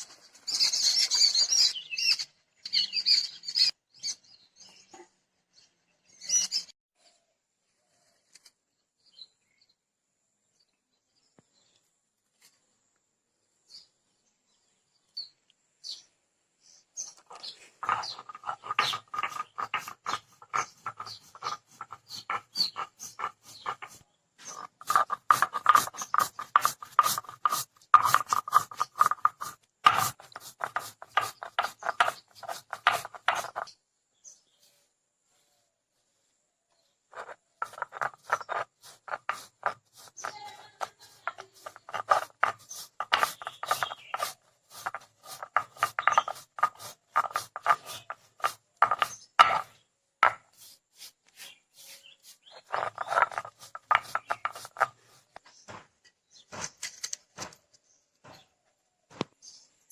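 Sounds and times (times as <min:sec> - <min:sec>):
knife cutting mango: 0:17.8 - 0:33.7, 0:37.6 - 0:55.1.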